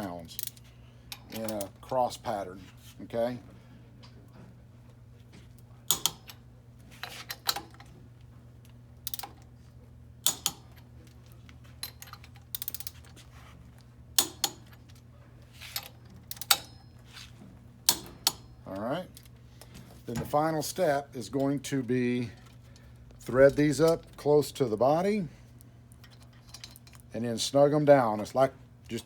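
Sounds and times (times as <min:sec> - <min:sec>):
steady low hum: 0:00.0 - 0:29.0
metal tool clicks and clinks: 0:05.9 - 0:06.4, 0:09.0 - 0:09.4, 0:10.2 - 0:10.9, 0:11.8 - 0:13.0
ratchet clicking: 0:05.9 - 0:06.4, 0:09.0 - 0:09.4, 0:10.2 - 0:10.6, 0:11.9 - 0:13.0.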